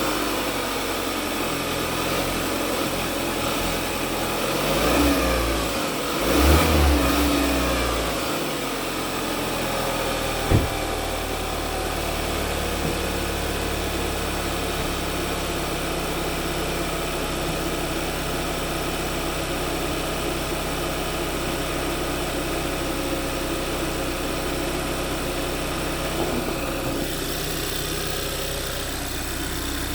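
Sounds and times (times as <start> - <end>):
car engine revving and idling: 0.0 - 29.9
sharp engine knock: 10.5 - 11.2.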